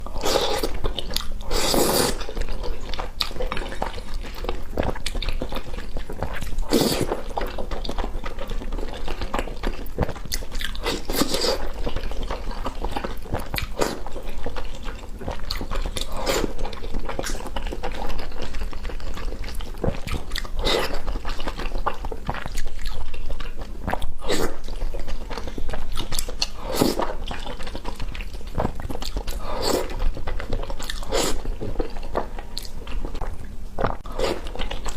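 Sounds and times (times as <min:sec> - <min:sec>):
person chewing noodles: 0:00.0 - 0:34.9
noodle slurp: 0:01.4 - 0:02.3.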